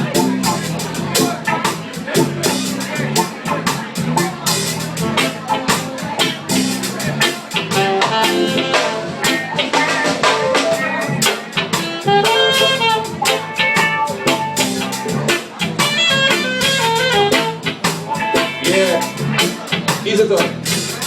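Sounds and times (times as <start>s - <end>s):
drum kit hits: 0.0s - 21.0s
reggae band playing: 0.0s - 21.0s
horn-like held notes: 10.7s - 14.9s.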